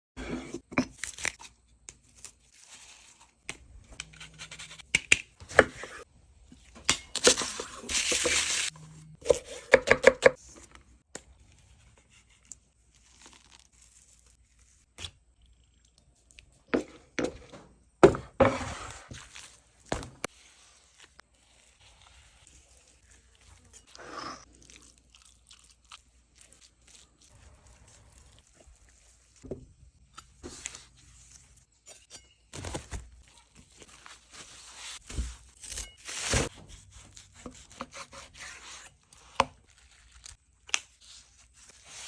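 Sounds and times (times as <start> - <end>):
tearing and crinkling: 12.4 - 14.8.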